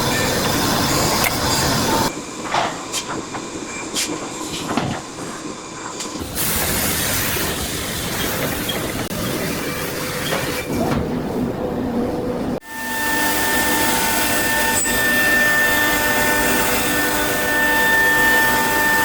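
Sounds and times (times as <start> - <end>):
hissing machine noise: 5.9 - 10.6.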